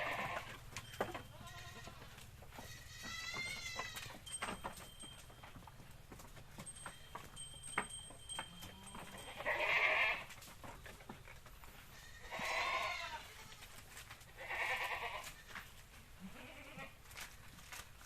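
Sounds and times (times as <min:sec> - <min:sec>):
goats bleating: 0:00.0 - 0:00.6, 0:01.2 - 0:04.1, 0:08.8 - 0:10.3, 0:11.9 - 0:13.7, 0:14.3 - 0:15.4, 0:16.2 - 0:17.0.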